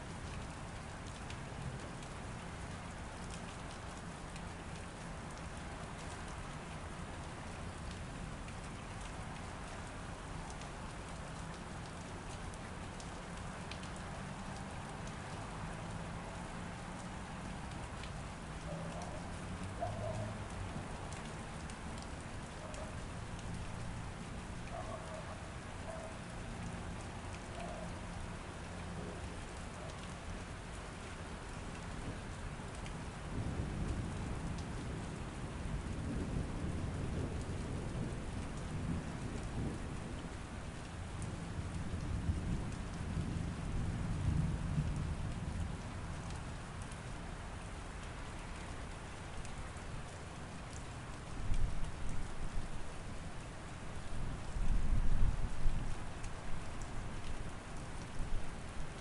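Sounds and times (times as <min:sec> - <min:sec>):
steady rainfall: 0:00.0 - 0:59.0
low rolling thunder: 0:33.3 - 0:40.4, 0:41.3 - 0:45.7.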